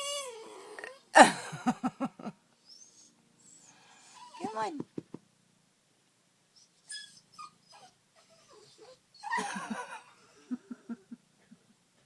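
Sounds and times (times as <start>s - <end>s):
puppy whimpering and whining: 0.0s - 1.1s, 2.6s - 4.6s, 6.6s - 9.7s.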